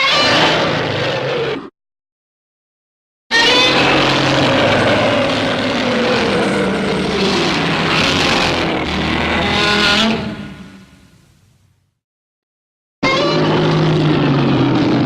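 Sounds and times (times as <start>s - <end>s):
roaring blast with gliding tones: 3.6s - 11.4s.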